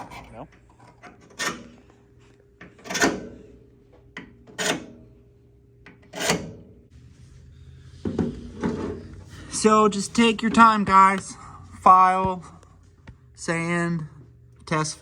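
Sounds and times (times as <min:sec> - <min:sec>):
hand file scraping metal: 0:06.1 - 0:06.6.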